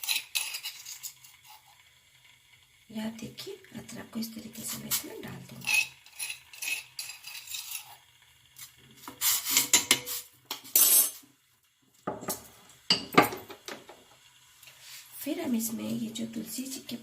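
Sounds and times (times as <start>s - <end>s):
utensils scraping metal vessel: 0.0s - 1.8s, 4.5s - 8.1s, 9.0s - 11.2s.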